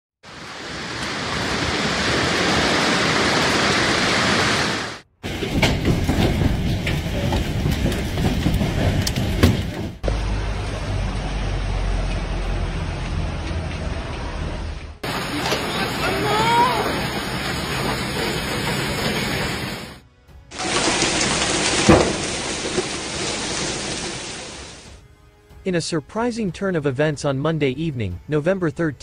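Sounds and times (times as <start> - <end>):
steady downpour: 0.2 - 9.3, 15.0 - 25.0
hail and rain pelting: 0.3 - 9.5, 15.0 - 25.0
hailstones clattering: 5.3 - 9.5, 20.6 - 24.9.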